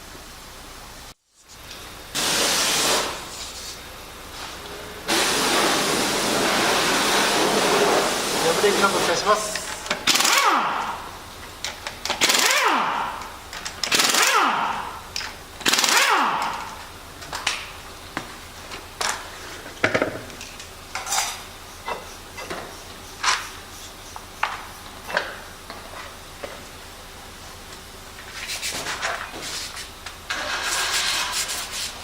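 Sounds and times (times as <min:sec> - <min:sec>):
pneumatic impact wrench: 0:02.1 - 0:03.7, 0:05.1 - 0:08.4, 0:09.9 - 0:16.8, 0:20.9 - 0:25.5, 0:28.3 - 0:32.0.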